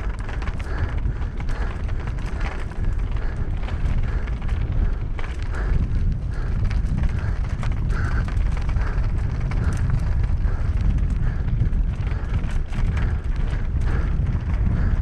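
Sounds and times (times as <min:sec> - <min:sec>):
bike rattling over rocks: 0:00.0 - 0:15.0
wind buffeting microphone: 0:00.0 - 0:15.0.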